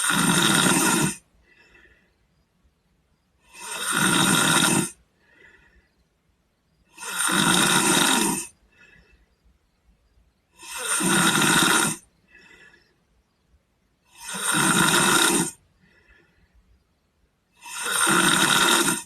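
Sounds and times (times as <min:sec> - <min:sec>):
boy snoring: 0:00.0 - 0:02.0, 0:03.4 - 0:05.0, 0:06.8 - 0:09.1, 0:10.5 - 0:12.8, 0:14.1 - 0:16.3, 0:17.5 - 0:19.0
faint breaths: 0:00.0 - 0:18.3.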